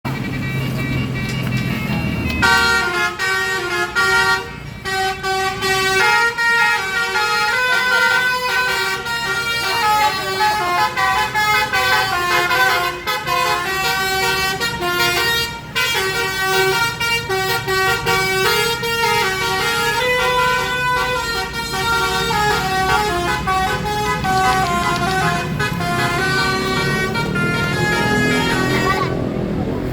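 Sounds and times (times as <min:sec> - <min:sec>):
multi-trumpet air horn tune: 0:02.4 - 0:29.3
low engine rumble: 0:16.0 - 0:29.9.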